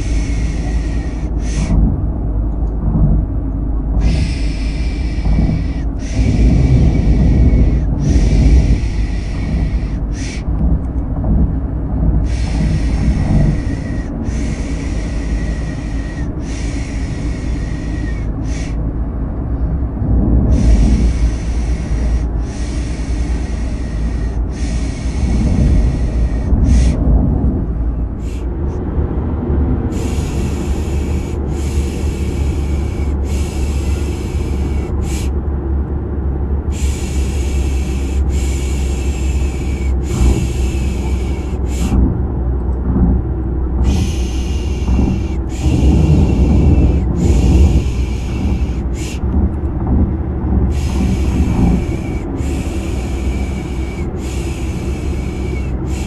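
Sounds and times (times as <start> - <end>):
car engine and road rumble: 0.0 - 56.0
person shushing: 4.0 - 10.5, 12.3 - 18.8, 43.8 - 49.3.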